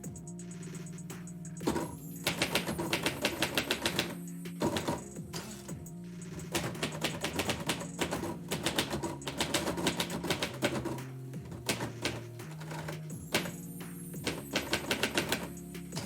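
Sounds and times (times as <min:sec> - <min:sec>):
typewriter keys striking: 0:01.6 - 0:05.0, 0:06.4 - 0:13.6, 0:14.2 - 0:15.5.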